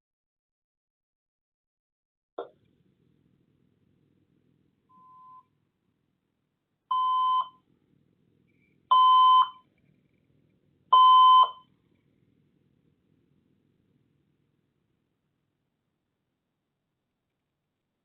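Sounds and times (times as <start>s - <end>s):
electronic beeps: 8.9s - 9.6s, 11.0s - 11.6s.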